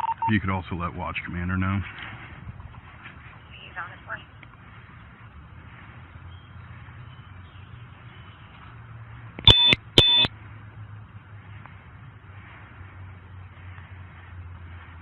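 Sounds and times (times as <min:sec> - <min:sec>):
short electronic beeps: 0:00.0 - 0:00.3, 0:09.4 - 0:10.3.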